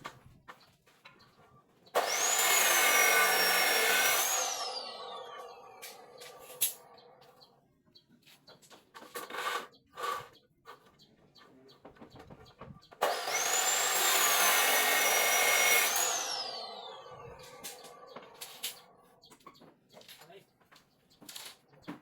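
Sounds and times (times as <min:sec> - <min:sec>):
power tool whining: 0:02.0 - 0:07.2, 0:13.0 - 0:18.9.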